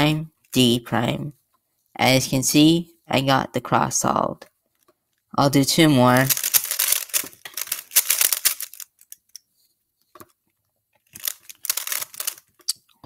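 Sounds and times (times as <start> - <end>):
puzzle cube plastic clicks: 6.2 - 9.4, 11.0 - 12.8.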